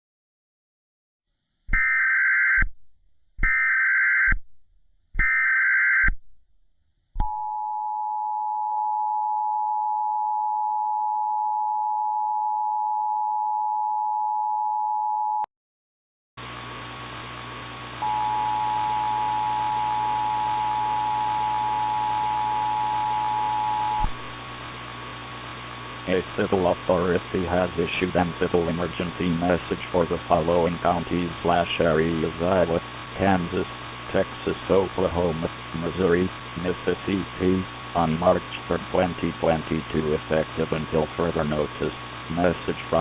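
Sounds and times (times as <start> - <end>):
two-tone attention signal: 18.0 - 24.1
hissing humming relay: 26.1 - 43.0.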